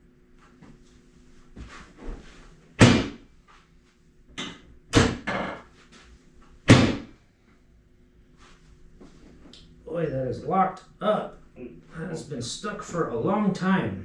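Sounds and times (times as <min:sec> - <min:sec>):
loud thumps: 0:02.8 - 0:03.2, 0:04.4 - 0:05.7, 0:06.6 - 0:07.1.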